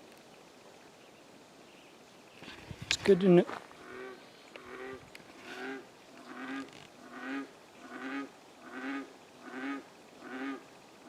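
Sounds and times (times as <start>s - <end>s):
animal calling: 3.8s - 10.6s.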